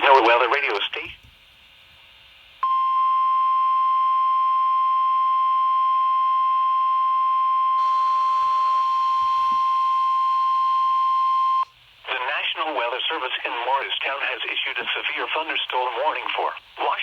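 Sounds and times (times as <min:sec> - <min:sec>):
faint radio hiss: 0:00.0 - 0:02.6, 0:07.8 - 0:17.0
loud steady alarm beep: 0:02.6 - 0:11.6.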